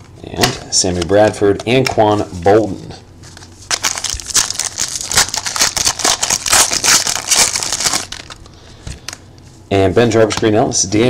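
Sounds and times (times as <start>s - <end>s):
card pack wrapper crinkling: 3.3s - 9.2s.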